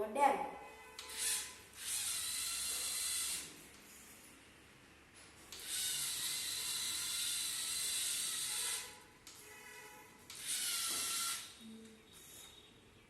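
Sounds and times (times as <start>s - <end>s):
toy motors whirring: 1.0s - 4.2s, 5.5s - 9.4s, 10.3s - 12.6s.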